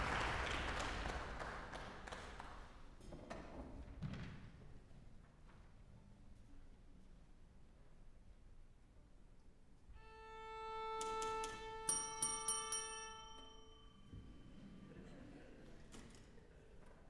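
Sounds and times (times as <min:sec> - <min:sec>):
violin holding a note: 0:10.0 - 0:14.5
bright ringing strokes: 0:10.6 - 0:14.8.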